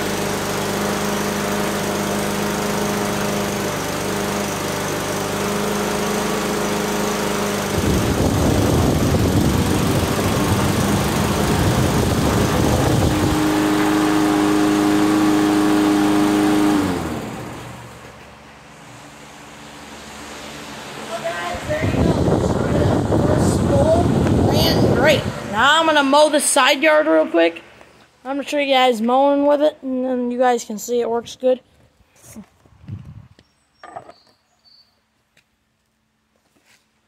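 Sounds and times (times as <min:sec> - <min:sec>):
lawn mower engine running: 0:00.0 - 0:28.6.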